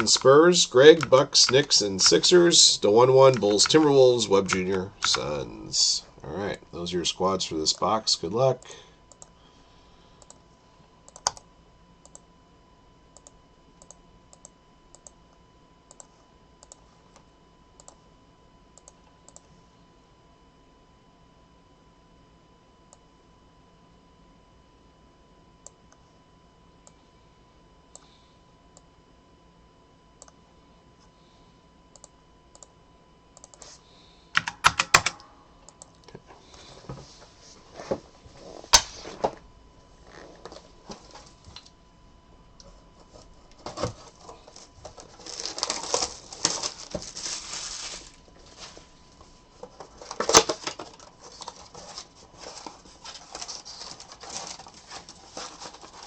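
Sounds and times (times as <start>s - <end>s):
foil wrappers tearing and crinkling: 45.0s - 48.8s.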